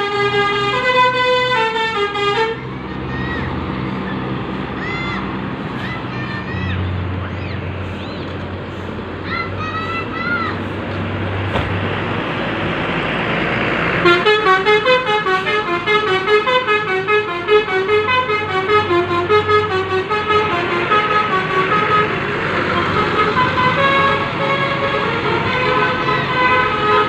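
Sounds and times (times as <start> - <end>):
musical air horn tune: 0.0 - 2.6, 14.0 - 27.0
engine and traffic noise: 0.0 - 27.0.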